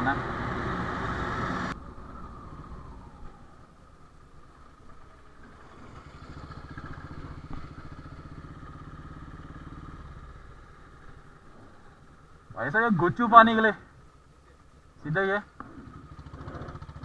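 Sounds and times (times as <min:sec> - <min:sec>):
motorcycle engine running: 0:04.9 - 0:12.5, 0:15.6 - 0:17.0.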